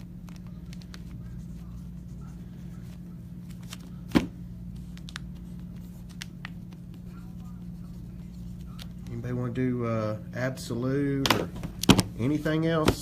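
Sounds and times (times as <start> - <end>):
steady low hum: 0.0 - 13.0
cards and packaging handled: 0.2 - 9.2.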